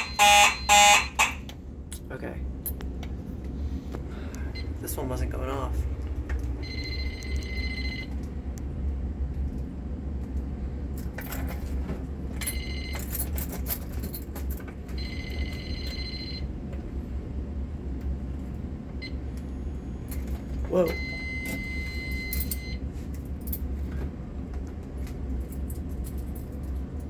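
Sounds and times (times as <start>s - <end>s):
fire alarm electronic tone: 0.0s - 1.4s, 6.6s - 8.2s, 12.5s - 13.0s, 15.0s - 16.5s, 20.9s - 22.8s
steady low hum: 0.0s - 11.3s.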